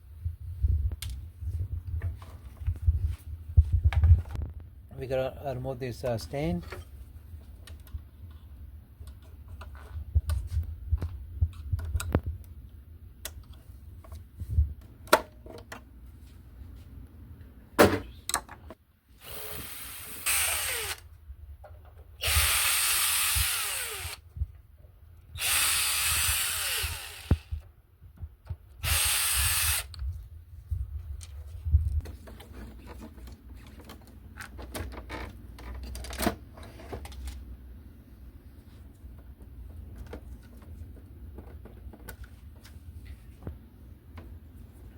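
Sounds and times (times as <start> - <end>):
clicks and knocks from handling parts: 6.5 - 15.9, 31.0 - 37.5, 38.9 - 44.4
electric screwdriver running: 19.2 - 21.0, 22.2 - 24.2, 25.4 - 27.6, 28.8 - 29.9.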